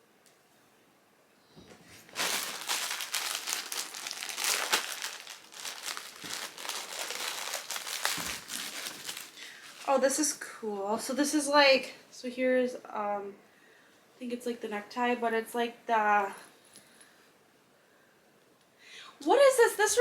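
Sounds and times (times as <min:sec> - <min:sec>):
plastic bag crinkling: 0:01.8 - 0:10.2.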